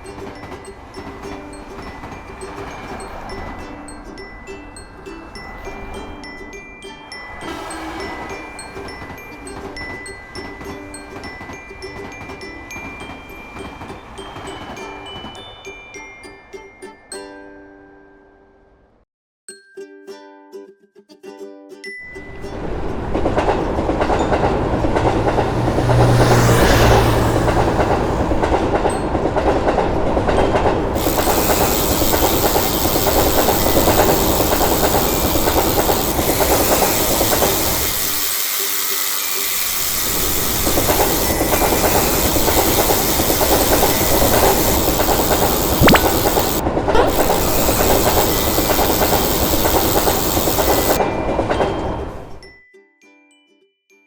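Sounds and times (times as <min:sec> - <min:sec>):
train rushing noise: 0:07.3 - 0:09.9, 0:22.5 - 0:52.4
train wheels clattering on rails: 0:22.6 - 0:52.4.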